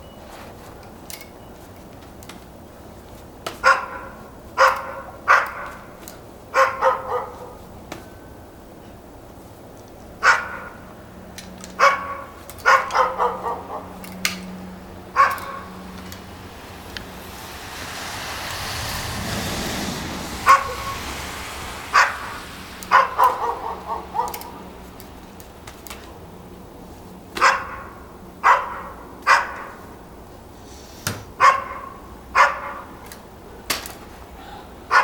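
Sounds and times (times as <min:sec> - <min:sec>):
dog barking: 0:03.6 - 0:07.7, 0:10.2 - 0:10.9, 0:11.8 - 0:14.0, 0:15.1 - 0:15.9, 0:20.4 - 0:21.0, 0:21.9 - 0:24.7, 0:27.4 - 0:29.9, 0:31.4 - 0:33.0
rushing noise: 0:13.5 - 0:25.6.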